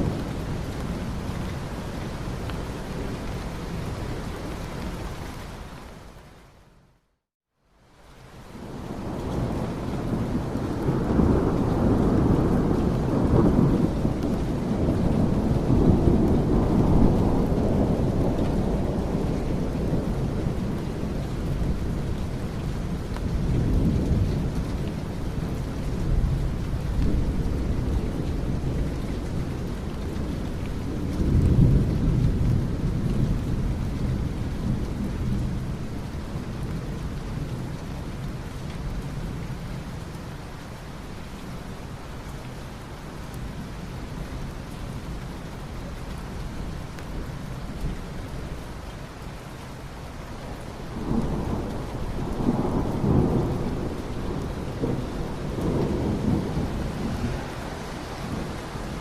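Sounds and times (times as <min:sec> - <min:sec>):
steady rain: 0:00.0 - 0:59.0
thunder rumbling: 0:08.6 - 0:37.7, 0:50.7 - 0:59.0.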